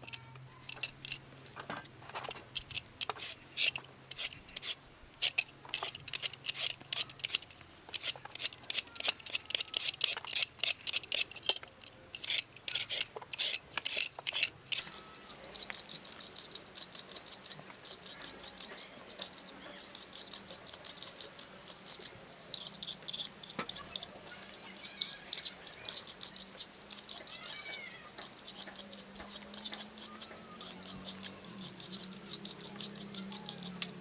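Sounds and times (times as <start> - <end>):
knife cutting raw potatoes: 2.6 - 7.4, 8.0 - 11.6, 12.2 - 24.1, 25.0 - 34.0.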